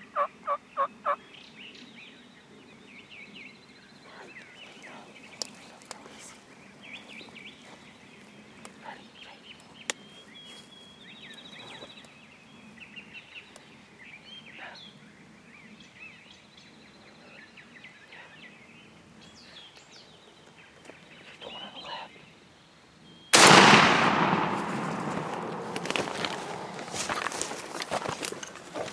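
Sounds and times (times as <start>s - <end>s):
small birds chirping: 0.0s - 23.4s
shotgun blast: 23.4s - 26.6s.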